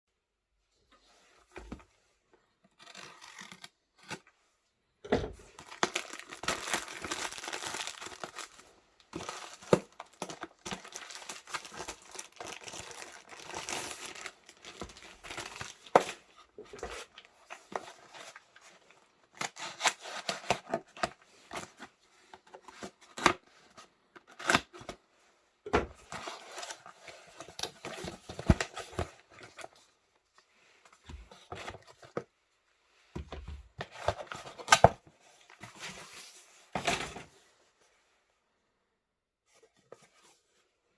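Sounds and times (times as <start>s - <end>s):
wrapping crinkling and tearing: 5.6s - 16.0s.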